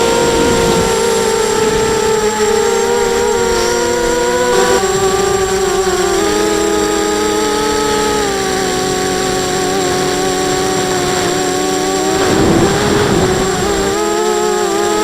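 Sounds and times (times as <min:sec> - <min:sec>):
quadcopter propellers whining: 0:00.0 - 0:15.0.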